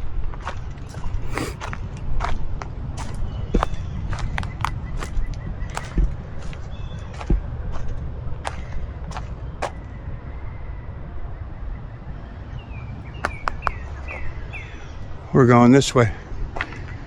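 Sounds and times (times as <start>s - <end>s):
footsteps on leafy dirt trail: 0.3s - 9.9s
bird chirps: 8.6s - 15.1s.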